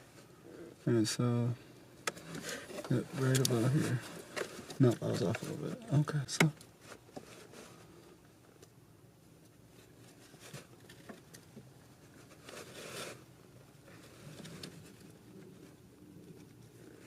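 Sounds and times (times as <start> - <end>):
rustling scrape: 2.2 - 5.7, 6.8 - 8.0, 9.7 - 11.3, 12.0 - 17.0.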